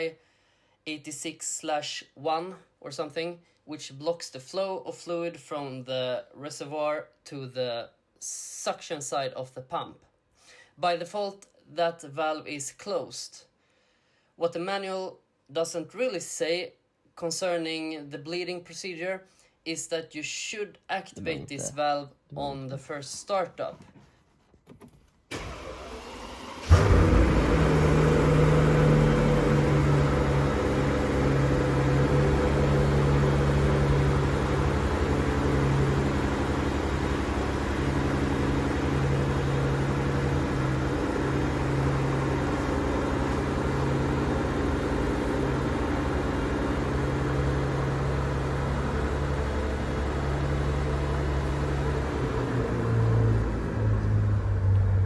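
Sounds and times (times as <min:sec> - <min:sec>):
car engine starting and idling: 0:25.3 - 0:55.0.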